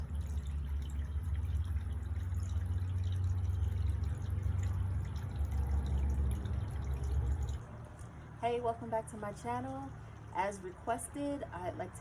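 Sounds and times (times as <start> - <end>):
fountain water trickling: 0.0 - 7.6.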